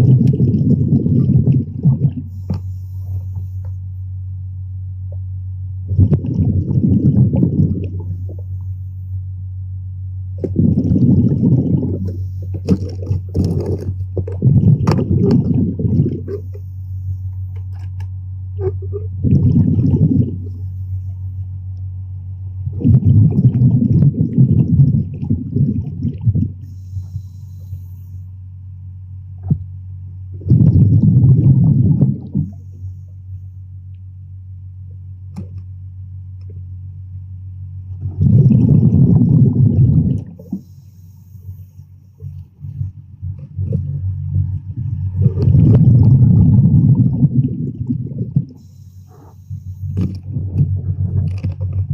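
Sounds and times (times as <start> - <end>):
diver's exhaled breath bubbling: 0.0 - 3.8, 5.9 - 8.8, 10.4 - 17.3, 18.6 - 21.4, 22.6 - 28.2, 30.4 - 33.2, 38.0 - 51.9
steady low hum: 0.0 - 51.9.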